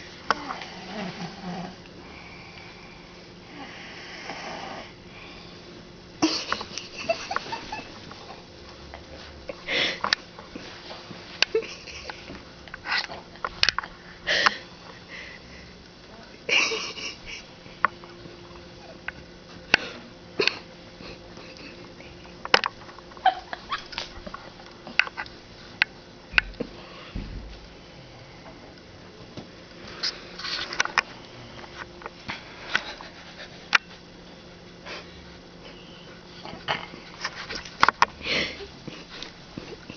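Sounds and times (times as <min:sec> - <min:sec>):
person snoring: 0:00.3 - 0:02.6, 0:03.4 - 0:05.5.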